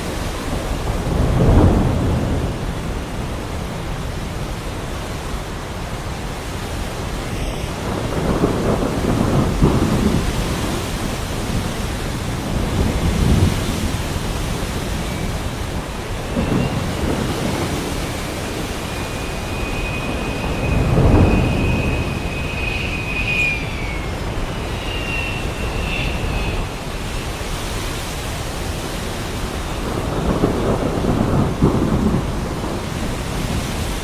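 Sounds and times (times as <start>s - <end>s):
heavy rain falling: 0.0s - 34.0s
thunder rolling: 0.0s - 34.0s.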